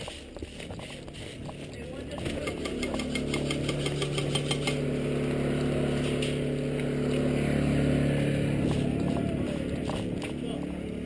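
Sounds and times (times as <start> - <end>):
rapid sharp clicks: 0.0 - 4.8
engine drone: 0.0 - 11.0.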